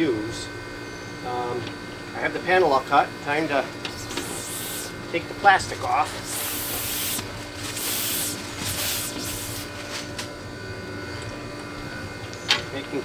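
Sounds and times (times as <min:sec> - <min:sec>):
plastic film being peeled off: 0:03.9 - 0:04.9, 0:05.6 - 0:10.3.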